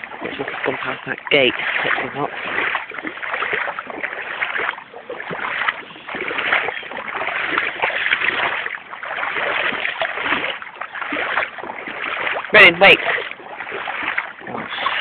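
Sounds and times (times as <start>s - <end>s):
boots wading through water: 0.0s - 15.0s.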